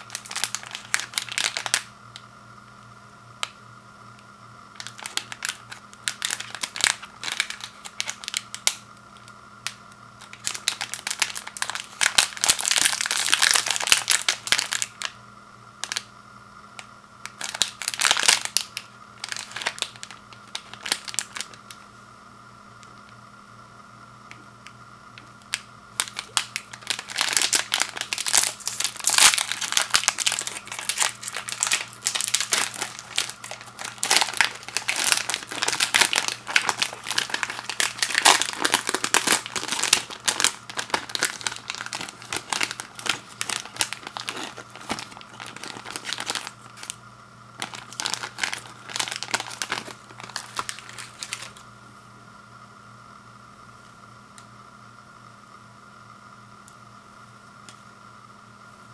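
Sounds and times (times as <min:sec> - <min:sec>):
packaging crinkling and tearing: 0:00.0 - 0:01.9, 0:04.7 - 0:15.2, 0:15.8 - 0:16.1, 0:16.8 - 0:21.8, 0:25.2 - 0:47.0, 0:47.6 - 0:51.6.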